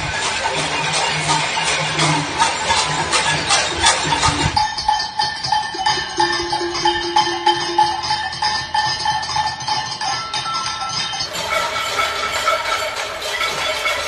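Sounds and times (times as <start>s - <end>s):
pots and pans banging: 11.2s - 14.0s.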